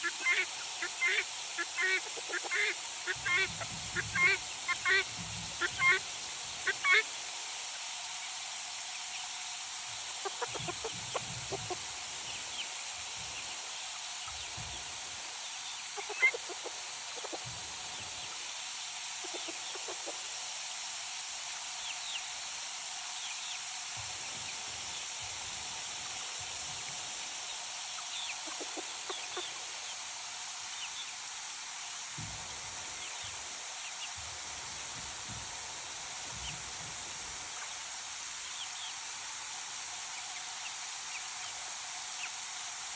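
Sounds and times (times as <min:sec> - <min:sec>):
chickens clucking: 0:00.0 - 0:07.1, 0:10.0 - 0:20.4, 0:24.0 - 0:29.7
steady background hiss: 0:00.0 - 0:42.9.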